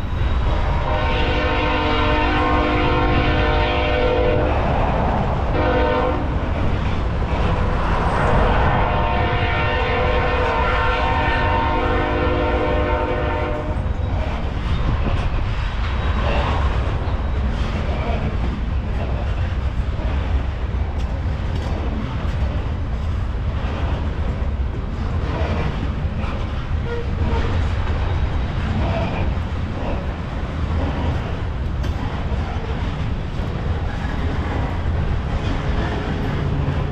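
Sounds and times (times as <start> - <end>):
train rumbling past: 0.0 - 36.9
locomotive horn blowing: 0.8 - 4.5, 5.6 - 6.4, 8.5 - 13.8
wheels clicking over rail joints: 13.8 - 36.9.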